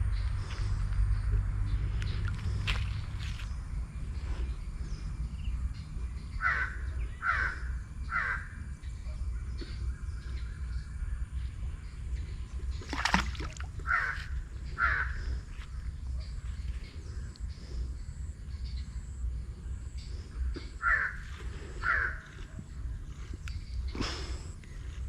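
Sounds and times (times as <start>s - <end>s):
steady low rumble: 0.0s - 25.0s
bird calling: 12.8s - 16.4s.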